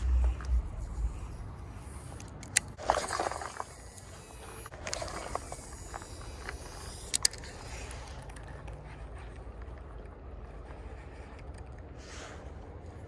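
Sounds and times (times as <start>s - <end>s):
sharp clicks: 0.0s - 3.4s, 4.0s - 8.8s.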